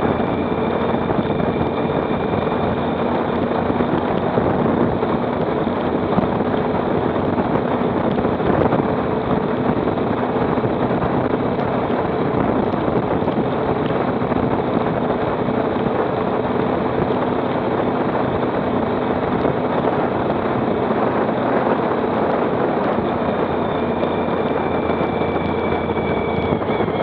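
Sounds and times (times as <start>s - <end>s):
motorcycle engine running: 0.0s - 27.0s
wind rush on microphone: 0.0s - 27.0s.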